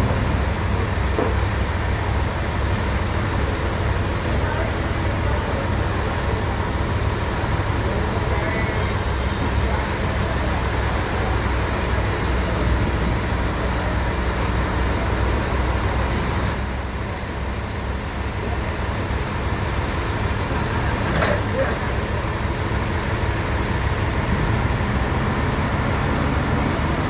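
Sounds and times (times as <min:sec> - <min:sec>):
loud high hiss: 0:08.6 - 0:15.2
bandsaw machinery humming: 0:08.8 - 0:15.0.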